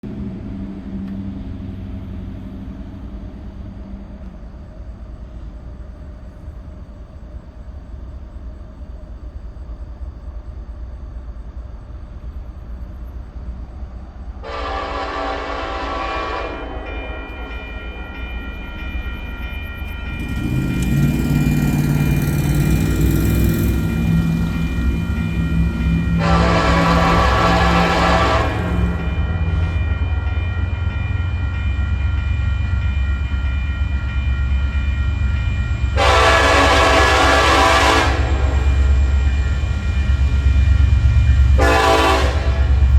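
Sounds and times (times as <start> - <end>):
diesel locomotive engines: 0.0 - 42.9
low train rumble: 0.0 - 42.9
locomotive air horn blasts: 14.4 - 17.0, 26.1 - 29.6, 36.0 - 39.0, 41.6 - 42.9.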